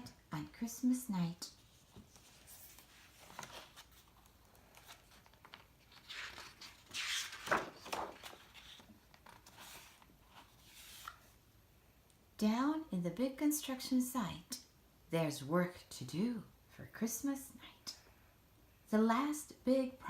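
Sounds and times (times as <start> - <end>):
book page turning: 1.5 - 11.3
paper rustling: 1.5 - 11.3.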